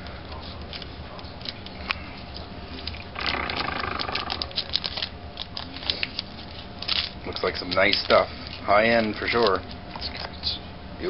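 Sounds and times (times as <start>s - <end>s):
cards clicking: 0.6s - 8.2s
wrapper crinkling: 0.6s - 10.3s
wrapper tearing open: 3.0s - 8.2s.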